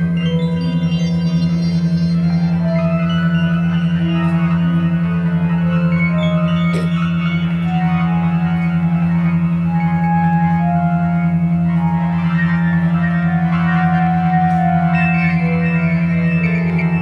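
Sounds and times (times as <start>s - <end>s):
ambient electronic music: 0.0s - 17.0s.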